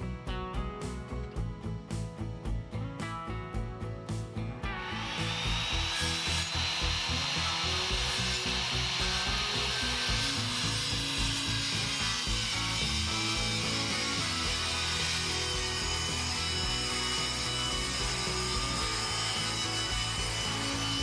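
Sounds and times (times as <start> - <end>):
guitar music: 0.0 - 21.0
power saw cutting plywood: 4.8 - 21.0.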